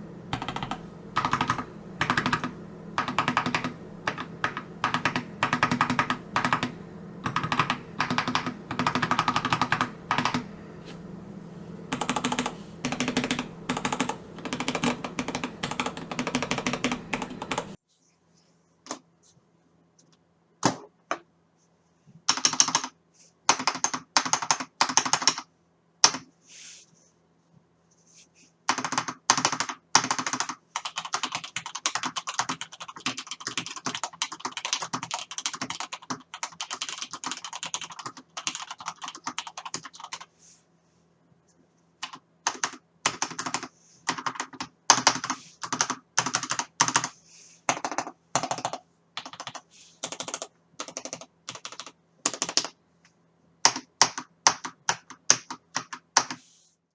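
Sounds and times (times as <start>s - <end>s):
faint steady hum: 0.0s - 56.9s
mechanical keyboard typing: 0.3s - 10.4s, 11.9s - 17.8s, 22.3s - 26.3s, 28.7s - 40.3s, 42.0s - 47.1s, 47.7s - 52.8s, 53.6s - 56.4s.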